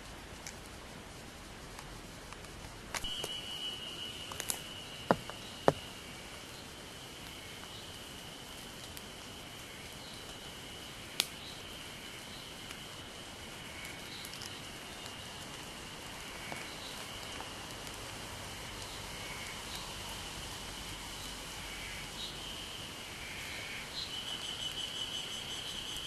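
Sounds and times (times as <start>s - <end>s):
insect high-pitched buzz: 2.9s - 26.0s.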